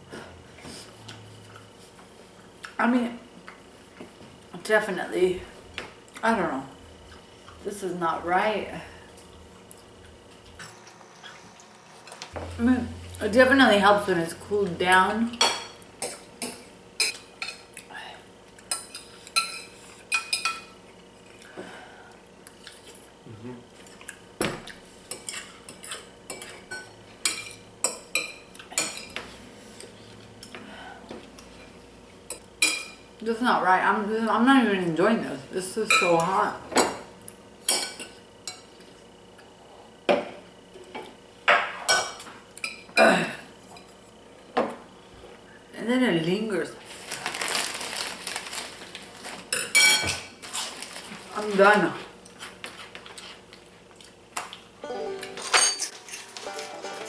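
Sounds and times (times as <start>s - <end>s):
utensils clinking against bowl: 18.6s - 20.7s, 55.3s - 57.0s.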